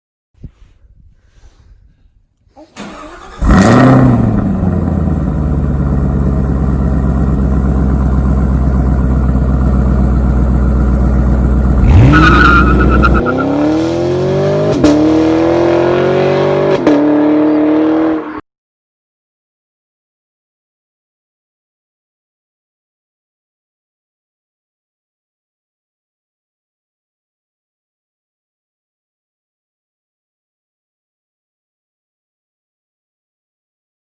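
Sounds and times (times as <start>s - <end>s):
car engine revving: 2.8s - 18.4s.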